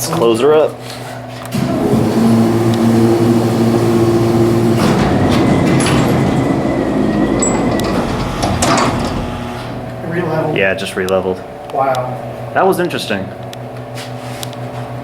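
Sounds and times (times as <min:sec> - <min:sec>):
elevator rushing travel noise: 0:01.5 - 0:12.6
elevator hum: 0:01.5 - 0:13.8.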